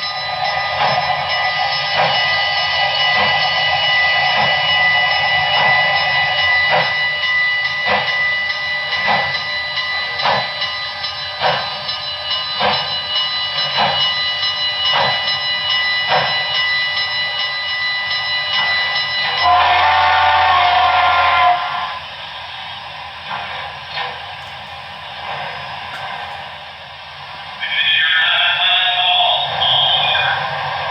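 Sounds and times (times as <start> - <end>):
chime whistle: 0.0 - 19.6, 28.2 - 30.4
steam locomotive exhaust chuffs: 0.0 - 30.9.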